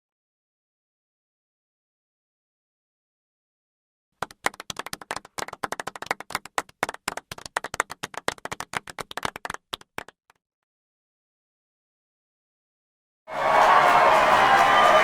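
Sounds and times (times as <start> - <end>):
people clapping: 4.2 - 10.3, 13.3 - 15.0.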